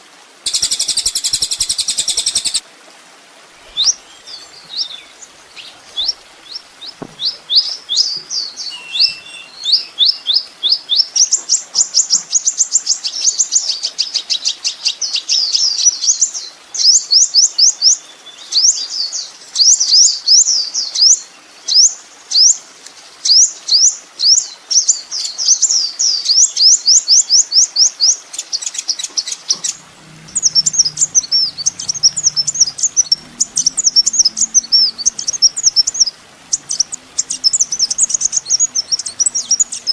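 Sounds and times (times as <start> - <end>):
jumbled bird twittering: 0.5 - 2.6, 3.6 - 11.0, 29.2 - 39.9
sunbird chirping trills: 0.5 - 2.6, 3.6 - 10.9, 29.2 - 39.9
faint low hum: 29.5 - 39.9.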